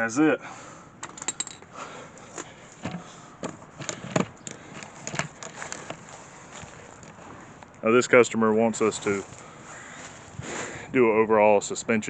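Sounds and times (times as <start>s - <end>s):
tools and parts clicking: 1.0s - 1.7s, 3.8s - 6.0s.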